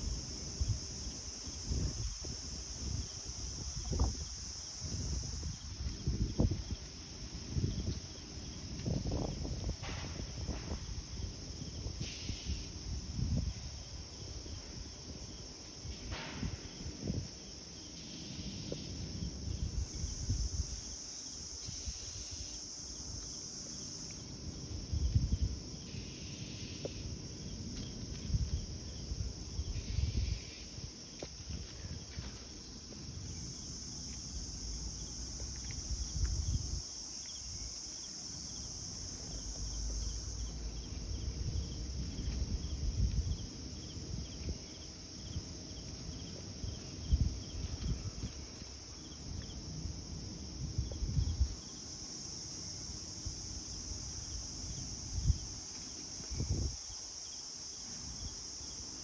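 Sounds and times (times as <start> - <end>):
insects chirring: 0.0 - 59.0.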